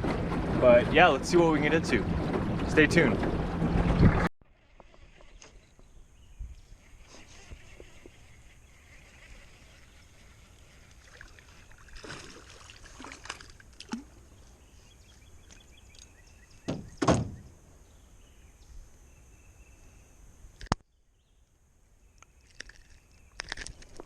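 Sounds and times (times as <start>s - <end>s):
hollow thumps: 16.7s - 17.5s.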